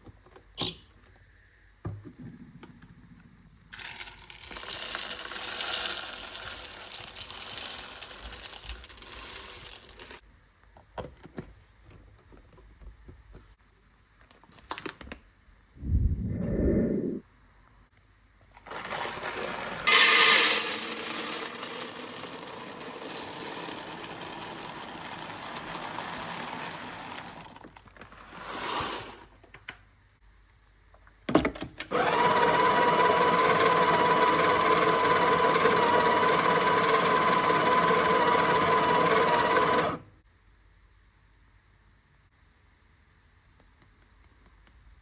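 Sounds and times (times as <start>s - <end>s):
espresso machine pitched whirring: 32.0s - 40.0s.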